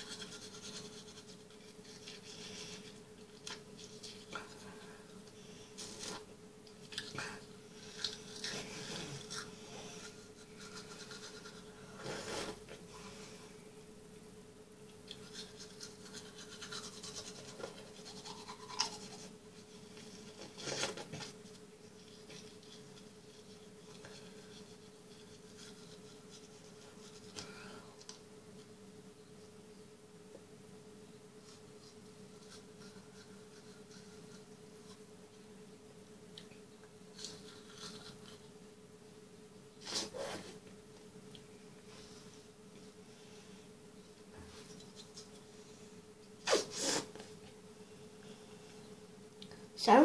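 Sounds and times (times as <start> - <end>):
bristles scrubbing teeth: 15.1 - 19.3.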